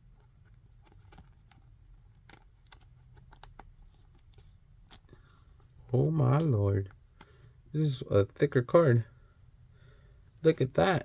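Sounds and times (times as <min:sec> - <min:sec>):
trading cards being flipped: 0:00.2 - 0:07.4.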